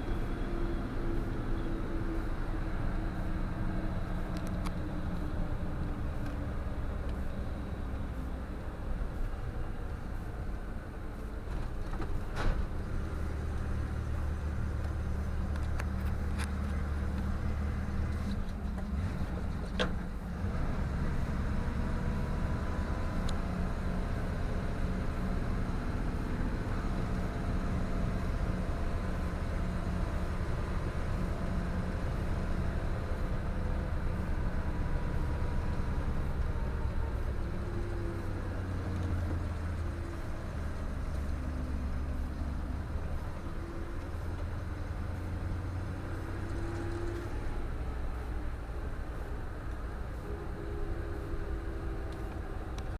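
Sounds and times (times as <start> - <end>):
bus engine droning: 0.0 - 52.9.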